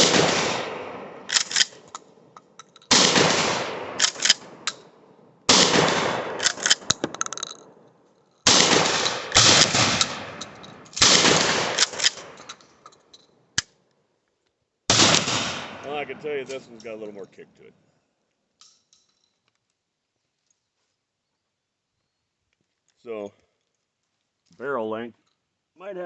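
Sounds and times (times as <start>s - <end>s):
shotgun shots: 0.0s - 1.9s, 2.9s - 4.7s, 5.5s - 7.3s, 8.4s - 12.4s, 14.9s - 16.6s
shotgun pump clacks: 1.3s - 3.0s, 4.0s - 4.8s, 6.4s - 7.7s, 9.3s - 13.0s.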